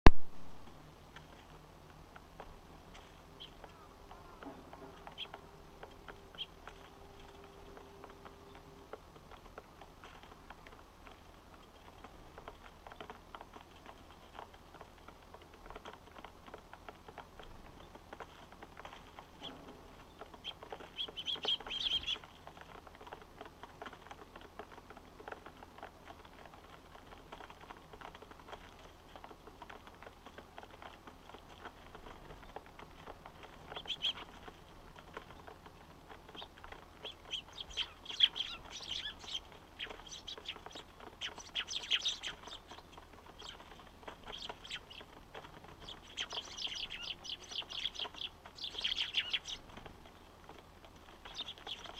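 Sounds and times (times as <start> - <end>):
sparrows chirping: 2.5 - 51.9.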